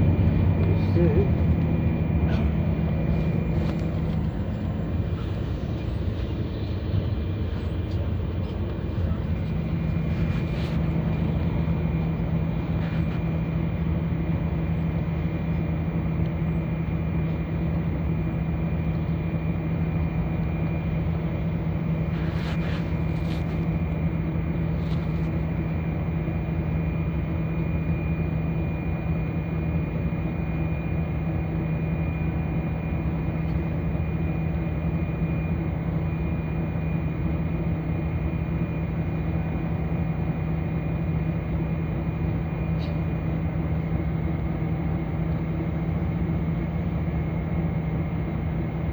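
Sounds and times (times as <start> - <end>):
bus engine hum: 0.0 - 48.9
faint high whine: 0.0 - 48.9.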